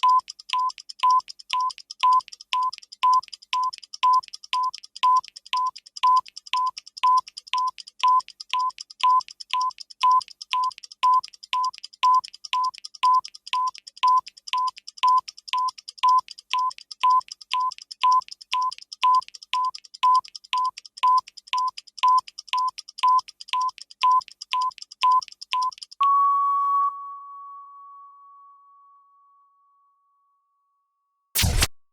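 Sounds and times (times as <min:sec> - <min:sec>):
clock ticking with beeps: 0:00.0 - 0:26.1, 0:31.4 - 0:31.8.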